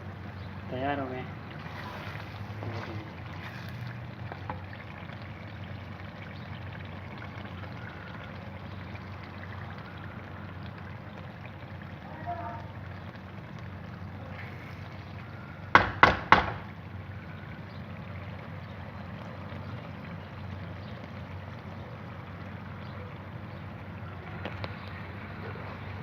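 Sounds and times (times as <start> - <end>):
sharp knocks: 15.8 - 16.6.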